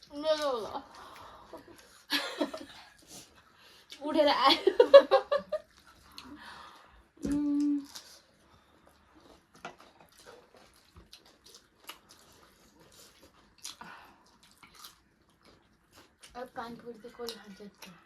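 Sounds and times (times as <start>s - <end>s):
person humming: 7.2s - 7.9s
mouth and eating clicks: 9.1s - 18.0s.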